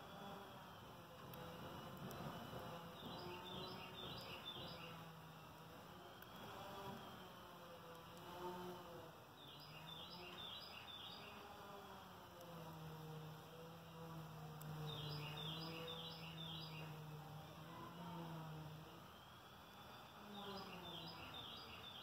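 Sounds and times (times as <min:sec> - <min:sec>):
low steady hum: 0:00.0 - 0:22.0
bird chirping: 0:02.0 - 0:05.2, 0:09.4 - 0:11.6, 0:14.6 - 0:17.3, 0:19.1 - 0:22.0.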